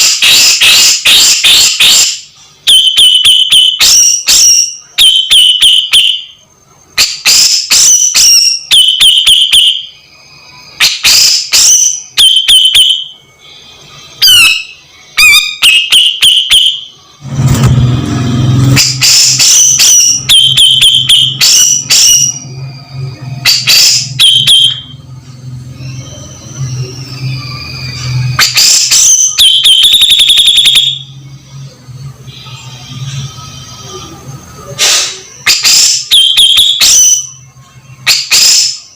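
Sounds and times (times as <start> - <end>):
bird calling with clicks and whistles: 14.2 - 16.8.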